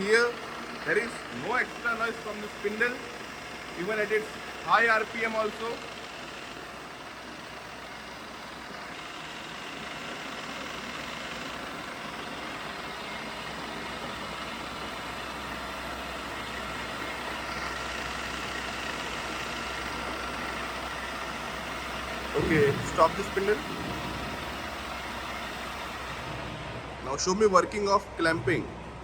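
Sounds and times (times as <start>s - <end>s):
drill spindle machine hum and whir: 0.0s - 29.0s
low electric hum: 22.3s - 29.0s.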